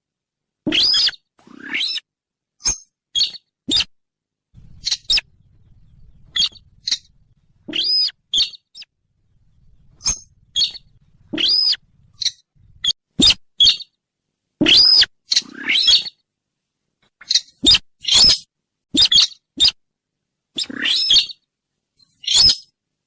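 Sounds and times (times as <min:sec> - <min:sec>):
bird calls: 0:04.6 - 0:13.9.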